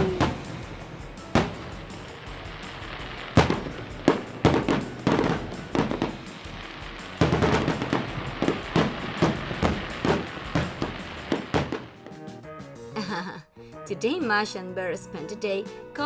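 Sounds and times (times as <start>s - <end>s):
fireworks banging and crackling: 0.0s - 12.2s
background music: 0.0s - 16.0s.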